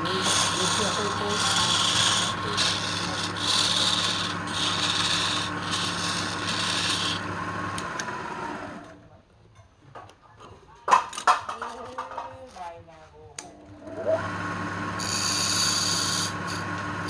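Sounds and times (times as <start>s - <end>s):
abrasive rubbing on wood: 0.0s - 7.2s
steady machine hum: 0.0s - 8.1s.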